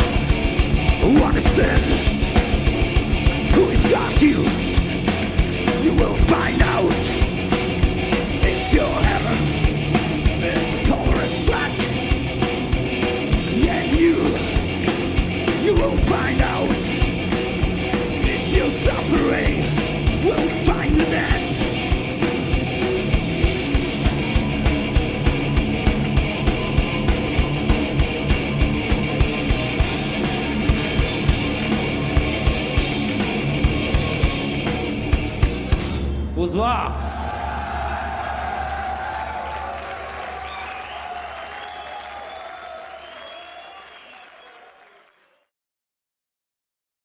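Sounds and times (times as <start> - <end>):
distorted electric guitars: 0.0 - 36.2
driving drums: 0.0 - 42.4.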